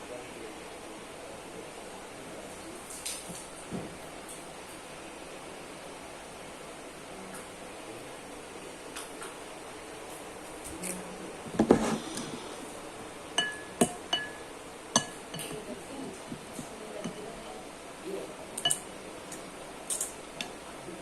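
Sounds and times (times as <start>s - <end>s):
cutlery clinking against dish: 13.4s - 17.3s, 18.6s - 20.6s.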